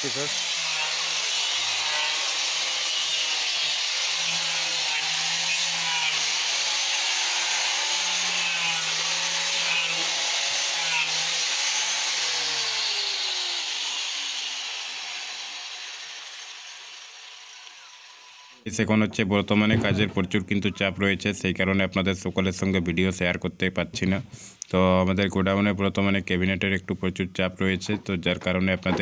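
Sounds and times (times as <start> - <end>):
power tool rasping wood: 0.0 - 18.7.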